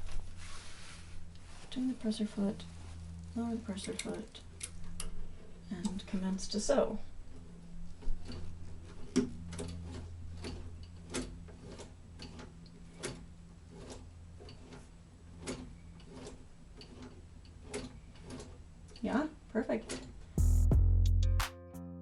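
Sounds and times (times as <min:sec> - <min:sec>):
hand-turned sewing machine clicking: 0:07.3 - 0:19.2.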